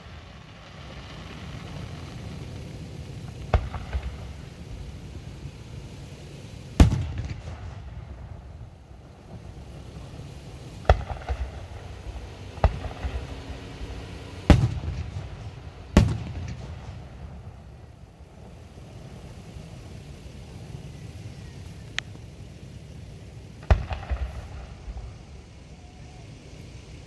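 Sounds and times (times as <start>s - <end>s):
crackling pops: 0.0s - 5.0s, 21.8s - 22.4s, 23.6s - 25.1s
fireworks booming: 0.0s - 27.0s
low rolling rumble: 0.0s - 27.0s.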